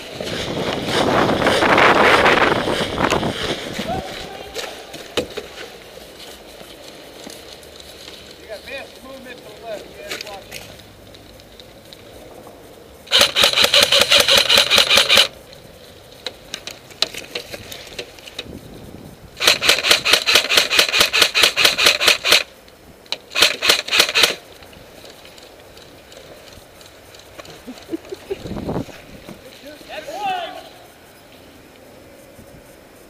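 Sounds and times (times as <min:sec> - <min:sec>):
airsoft gun firing full auto: 0:13.1 - 0:15.3, 0:19.4 - 0:22.5, 0:23.3 - 0:24.4.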